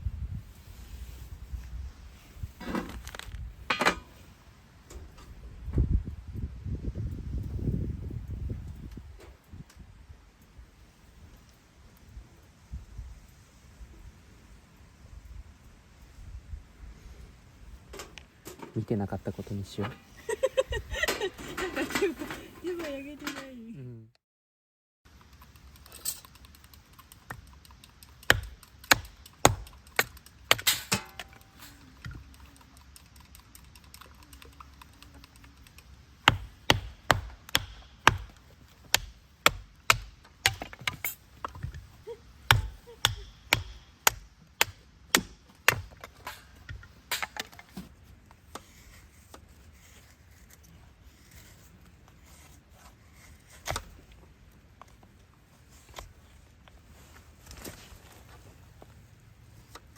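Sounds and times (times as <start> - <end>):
blade chopping on wood: 28.2 - 31.4, 36.2 - 41.8, 42.5 - 47.9.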